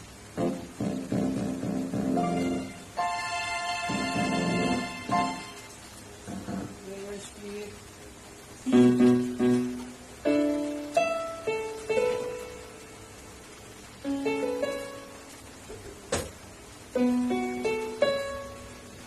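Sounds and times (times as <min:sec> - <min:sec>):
electronic keyboard notes: 0:00.3 - 0:06.9, 0:08.6 - 0:13.3, 0:14.0 - 0:15.4, 0:16.9 - 0:19.0.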